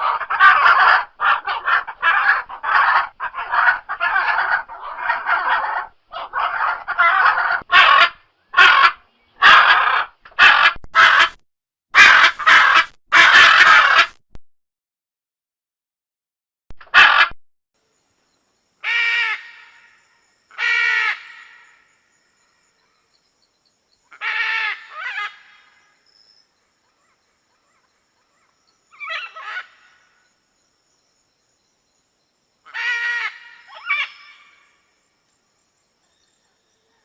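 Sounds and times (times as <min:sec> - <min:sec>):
macaws squawking: 0:00.0 - 0:11.4, 0:12.0 - 0:14.1, 0:16.9 - 0:17.4, 0:24.1 - 0:25.7, 0:29.0 - 0:30.0, 0:32.7 - 0:34.7.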